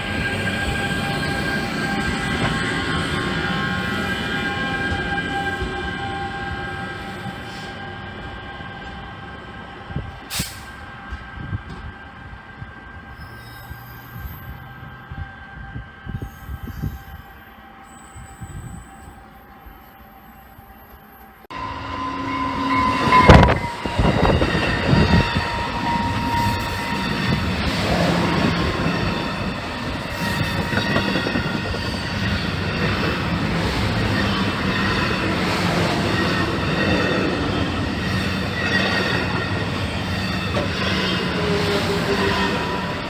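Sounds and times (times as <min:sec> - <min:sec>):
train wheels rumbling: 0:00.0 - 0:43.0
wheel squeal: 0:13.1 - 0:14.7, 0:16.1 - 0:43.0.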